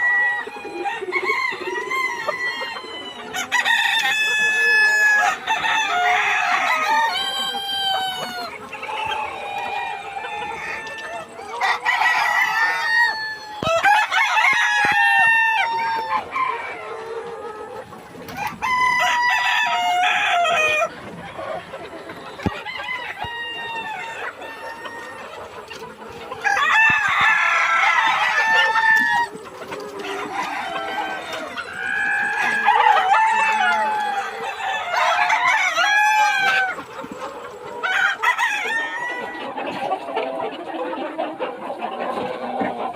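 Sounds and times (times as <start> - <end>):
roosters crowing: 0.0 - 40.0
hens clucking: 0.0 - 42.9.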